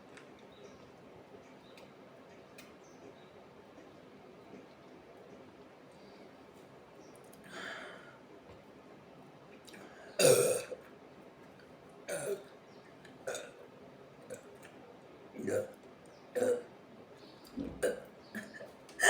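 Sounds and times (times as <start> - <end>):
woman burping: 10.2 - 10.8, 12.1 - 12.4, 13.3 - 13.5, 16.4 - 16.6.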